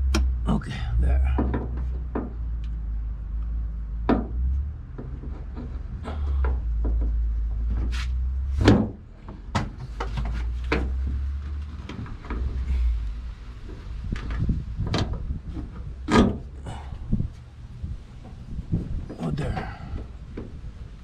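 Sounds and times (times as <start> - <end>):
steady low rumble: 0.0 - 21.0
clicks and knocks of metal strut: 1.2 - 2.8, 4.0 - 8.0, 13.7 - 16.6.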